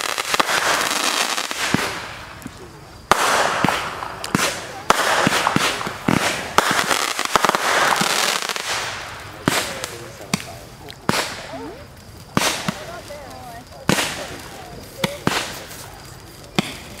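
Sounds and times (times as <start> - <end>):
fireworks bangs: 0.0 - 17.0
fireworks crackling hiss: 0.0 - 17.0.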